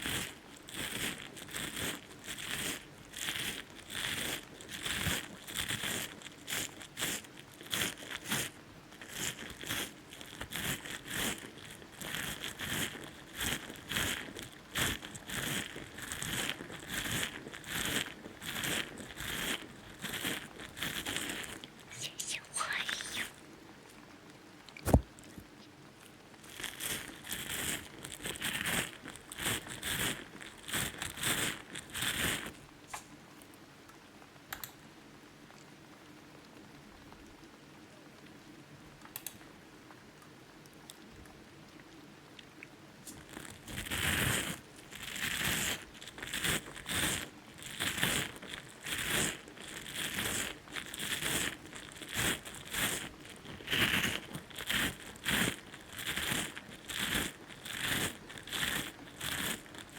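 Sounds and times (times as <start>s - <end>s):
scratchy crinkly strokes on microphone: 0.0s - 23.4s, 26.3s - 32.7s, 43.0s - 59.9s
sharp tap on microphone: 24.8s - 25.1s.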